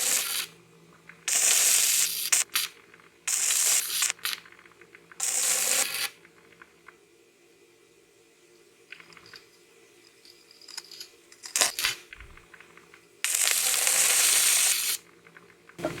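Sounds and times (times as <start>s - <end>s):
welding arc crackling and hissing: 0.0s - 0.6s, 1.2s - 6.6s, 11.4s - 15.8s.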